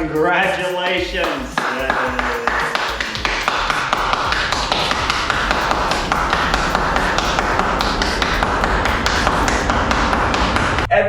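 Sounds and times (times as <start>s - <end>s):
heavy rain hiss: 0.8s - 10.9s
raindrops ticking near microphone: 1.0s - 10.9s
low wind rumble: 2.8s - 11.0s.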